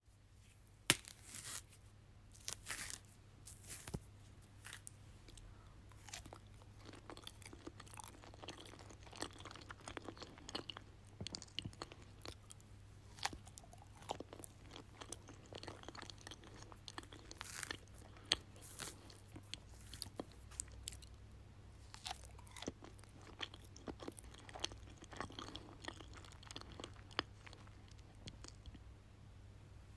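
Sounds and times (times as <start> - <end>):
person chewing banana: 4.6 - 21.2, 21.8 - 28.8.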